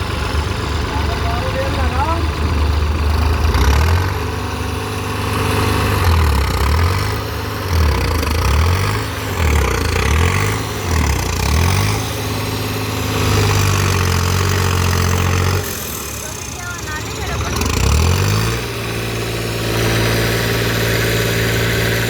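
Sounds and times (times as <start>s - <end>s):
diesel engine pulling under load: 0.0s - 22.0s.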